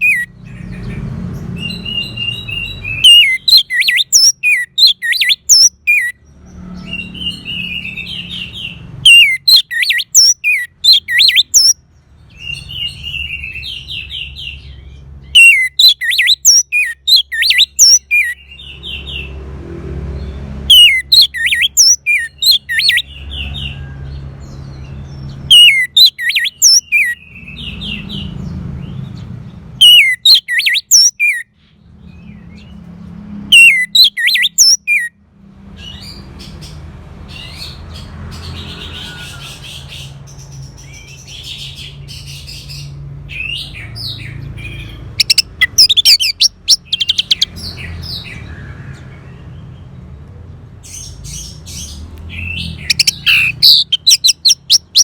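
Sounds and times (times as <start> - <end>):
thrush singing whistled notes: 0.0 - 0.3, 1.6 - 6.2, 6.8 - 11.8, 15.3 - 19.1, 20.7 - 23.8, 25.5 - 28.0, 29.8 - 31.5, 33.4 - 35.1, 44.8 - 48.3, 51.7 - 55.0
bird twittering: 0.0 - 6.2, 6.9 - 11.8, 12.4 - 19.2, 20.7 - 23.6, 25.4 - 28.3, 29.8 - 31.5, 33.5 - 35.1, 43.4 - 48.4, 50.9 - 55.0.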